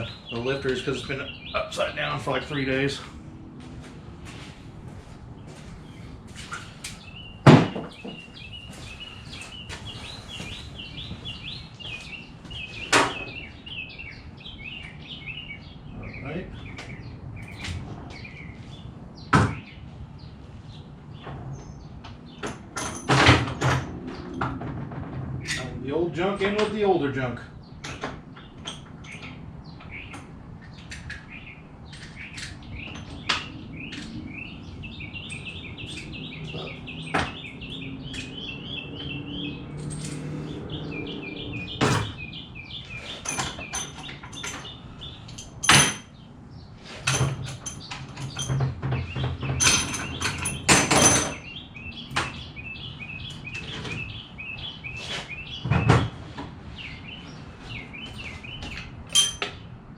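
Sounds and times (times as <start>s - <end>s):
metal tools clinking: 39.7s - 40.6s, 43.1s - 46.1s, 47.0s - 48.6s, 49.6s - 51.5s, 58.2s - 59.6s.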